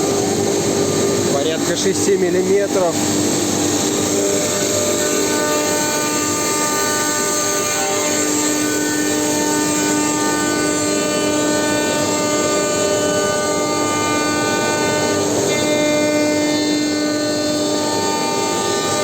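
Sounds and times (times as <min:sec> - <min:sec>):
spindle and vacuum pump rush: 0:00.0 - 0:06.7
router machine whine: 0:00.0 - 0:19.0.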